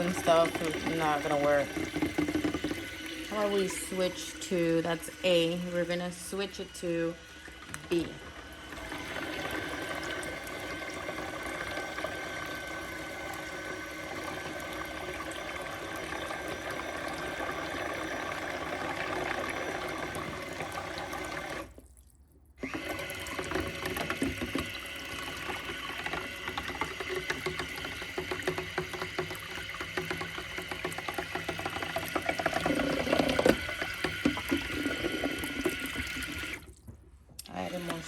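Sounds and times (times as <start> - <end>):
washing machine churning water: 0.0 - 38.0.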